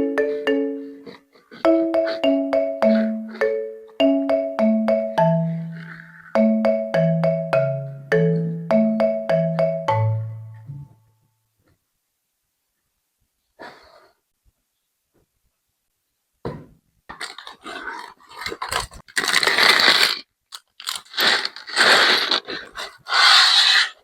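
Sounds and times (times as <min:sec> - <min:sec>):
plastic toy bricks scraping: 0:17.1 - 0:24.0.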